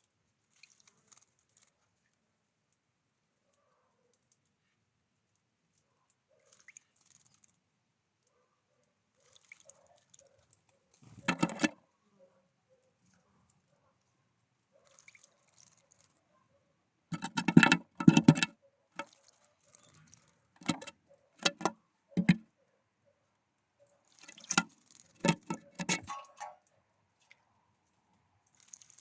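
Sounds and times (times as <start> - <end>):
birds pecking and tapping: 9.2 - 11.8, 17.1 - 22.5, 24.0 - 26.6.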